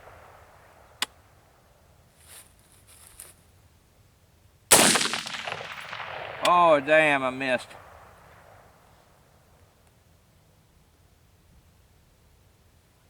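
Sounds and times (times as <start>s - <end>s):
rifle gunshot: 4.7s - 8.8s.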